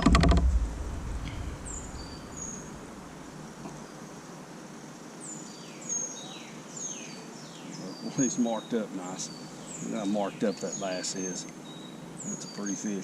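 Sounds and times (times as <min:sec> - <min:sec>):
loud clatter and thump: 0:00.0 - 0:02.9
outdoor background: 0:00.0 - 0:13.0
high bird chirps: 0:00.4 - 0:03.1.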